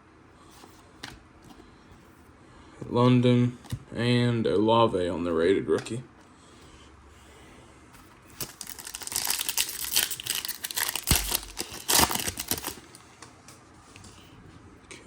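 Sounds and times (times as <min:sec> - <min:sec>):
card pack wrapper tearing: 0:08.4 - 0:13.0.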